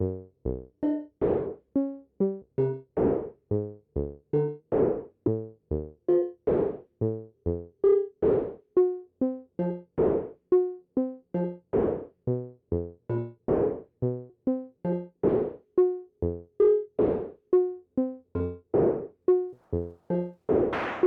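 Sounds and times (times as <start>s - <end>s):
synthesizer sequenced notes: 0.8s - 11.7s, 12.3s - 18.6s
noisy drum-like hits: 20.7s - 21.0s.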